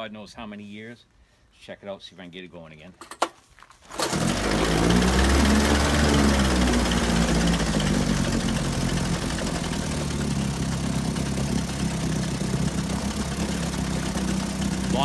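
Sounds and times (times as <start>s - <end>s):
outboard motor running: 3.9s - 15.0s.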